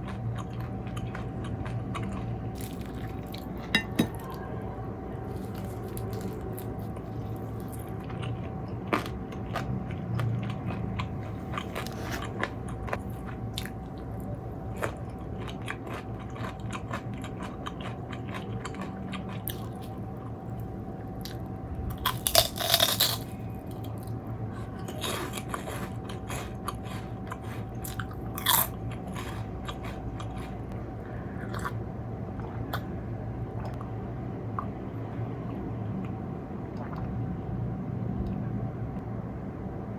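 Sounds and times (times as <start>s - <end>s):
crunching and chewing food: 0.0s - 31.8s
low hum: 0.0s - 39.9s.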